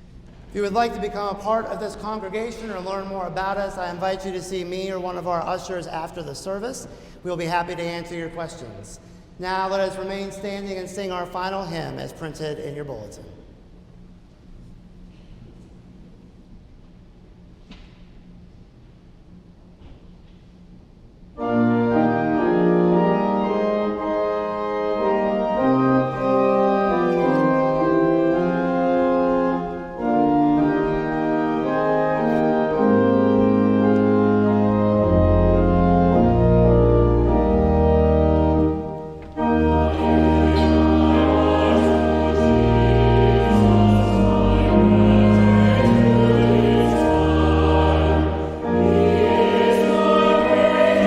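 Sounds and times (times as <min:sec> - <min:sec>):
church organ chords: 0:00.0 - 0:13.3, 0:21.4 - 0:51.0
organ pedal bass notes: 0:21.4 - 0:51.0.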